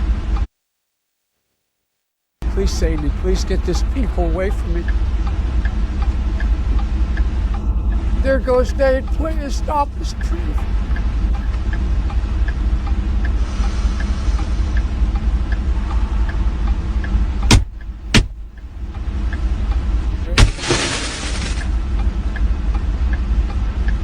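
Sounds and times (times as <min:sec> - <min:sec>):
faint ticking: 0:02.4 - 0:24.0
low vehicle-like rumble: 0:02.4 - 0:24.0
sharp knocks: 0:17.4 - 0:18.5, 0:20.3 - 0:21.7
loud hissing noise: 0:20.0 - 0:21.7.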